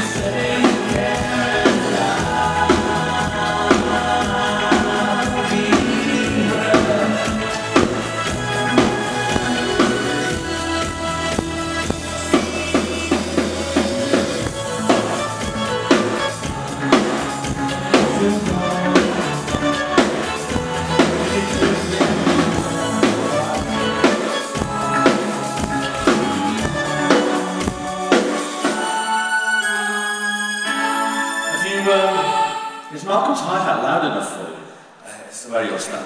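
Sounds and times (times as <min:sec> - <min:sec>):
drum kit beat: 0:00.0 - 0:29.0
held synthesizer notes: 0:00.0 - 0:33.3.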